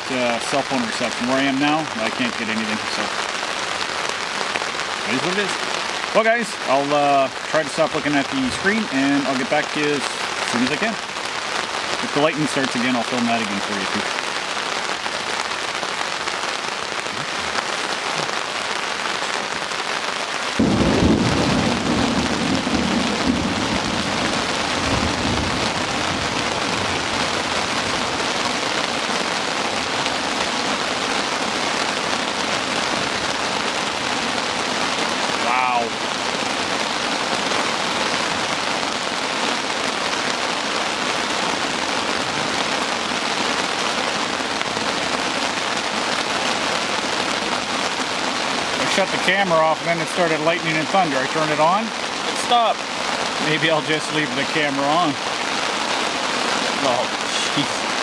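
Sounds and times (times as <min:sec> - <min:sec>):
heavy rain falling: 0:00.0 - 0:58.0
thunder rumbling: 0:20.5 - 0:31.1.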